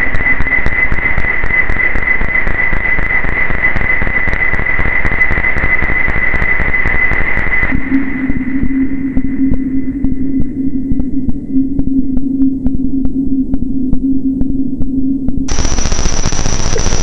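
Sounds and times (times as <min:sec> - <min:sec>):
crackling static noise: 0:00.0 - 0:10.1, 0:15.3 - 0:17.0
low steady hum: 0:07.8 - 0:17.0.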